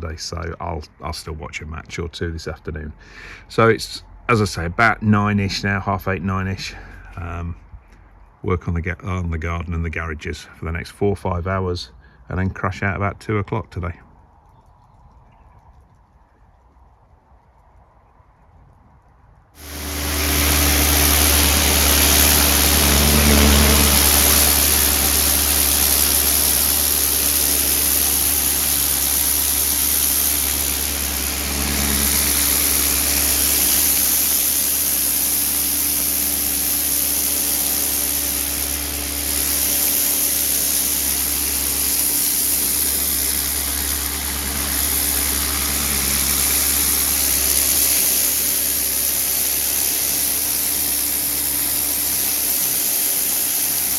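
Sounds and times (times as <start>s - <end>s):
high-pressure water jet hissing: 19.6s - 53.9s
pressure washer motor hum: 19.6s - 53.9s.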